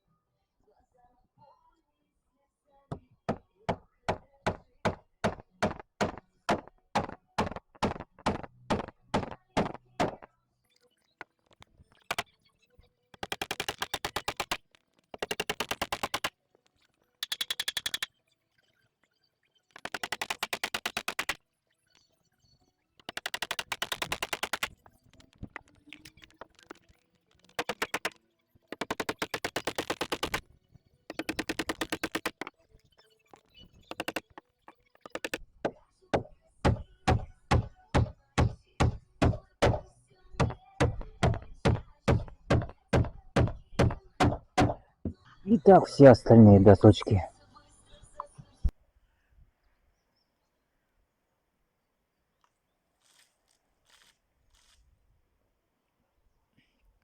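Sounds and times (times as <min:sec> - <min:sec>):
hammer striking: 0:03.3 - 0:10.3, 0:36.2 - 0:39.8
power tool rapid clicking: 0:12.0 - 0:12.2, 0:13.2 - 0:16.3, 0:17.2 - 0:18.1, 0:19.8 - 0:21.4, 0:23.0 - 0:26.8, 0:27.5 - 0:30.4, 0:31.1 - 0:32.5, 0:33.8 - 0:34.4, 0:35.0 - 0:35.4.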